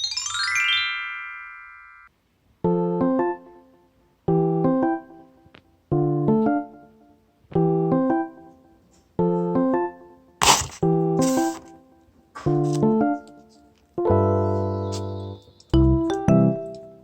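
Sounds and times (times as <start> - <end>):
light keyboard tune: 2.6 - 17.0.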